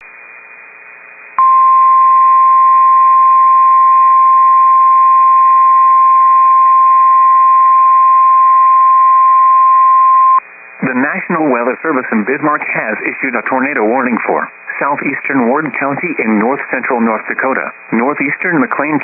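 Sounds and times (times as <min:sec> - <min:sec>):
faint radio hiss: 0:10.4 - 0:19.0.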